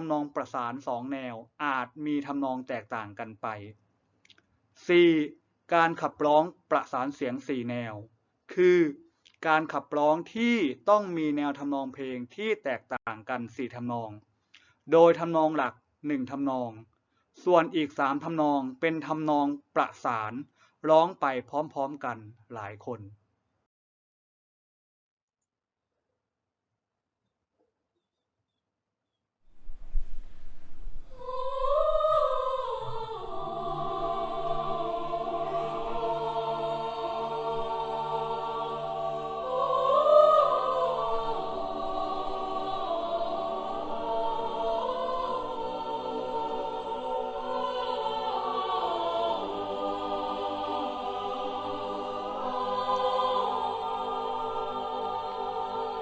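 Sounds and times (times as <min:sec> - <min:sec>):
choir singing in harmony: 0:00.0 - 0:01.2, 0:30.7 - 0:56.0.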